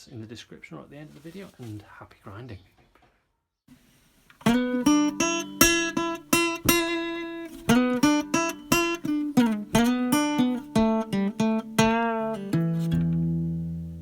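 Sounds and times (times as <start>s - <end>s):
acoustic guitar picking: 4.4s - 14.0s.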